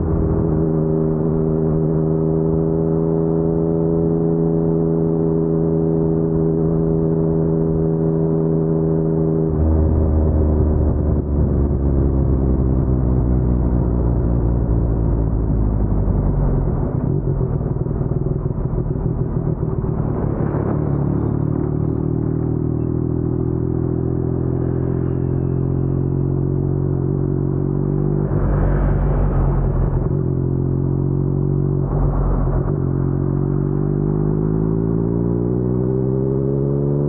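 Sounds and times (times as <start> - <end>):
motorcycle engine running: 15.8 - 27.9.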